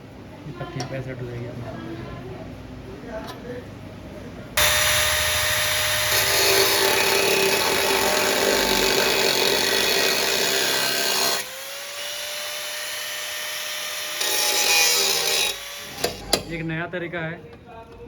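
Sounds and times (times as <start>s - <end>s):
power tool grinding cut: 4.6s - 16.4s.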